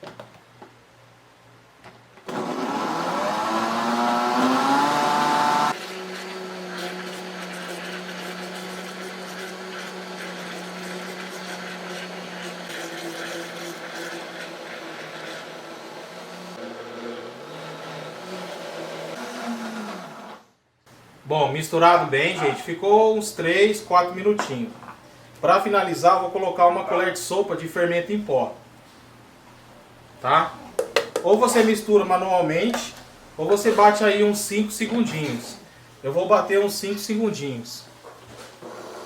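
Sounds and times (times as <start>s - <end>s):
blender motor whine: 2.3s - 20.6s, 38.6s - 39.0s.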